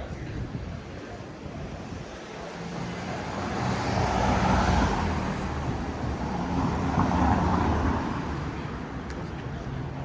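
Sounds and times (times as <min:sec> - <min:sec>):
vehicle engines passing: 0:02.5 - 0:10.0.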